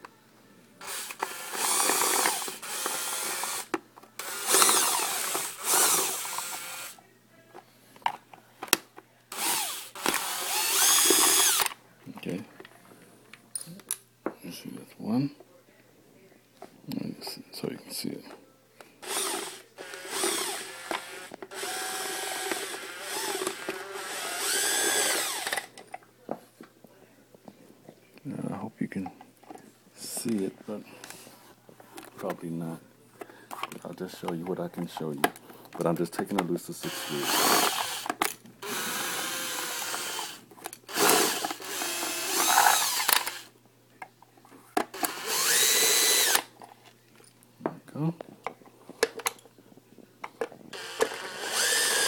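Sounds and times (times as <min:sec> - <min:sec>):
cordless drill running: 0:00.8 - 0:07.0, 0:09.3 - 0:11.7, 0:19.0 - 0:25.7, 0:36.8 - 0:43.5, 0:44.9 - 0:46.5, 0:50.7 - 0:52.0.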